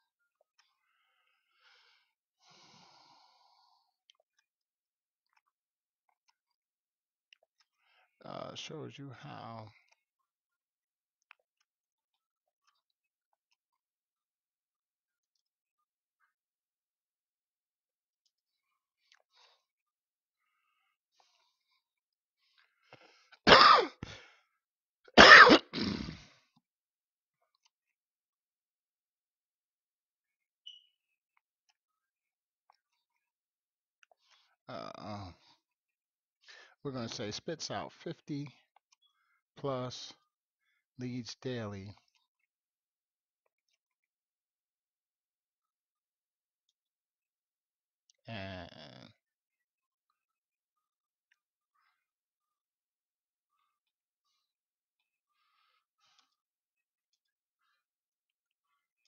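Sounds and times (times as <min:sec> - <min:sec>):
man coughing: 0:23.5 - 0:24.1, 0:25.2 - 0:26.2.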